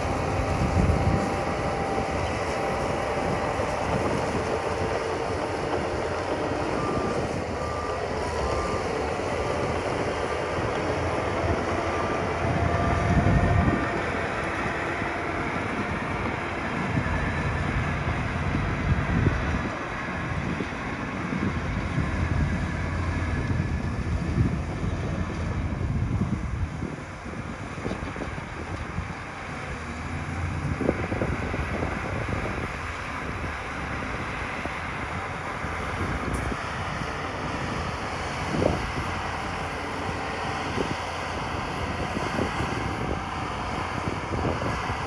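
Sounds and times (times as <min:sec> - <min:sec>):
reversing alarm beeping: 0:00.0 - 0:19.6
heavy earthmoving machinery engines: 0:00.0 - 0:45.0.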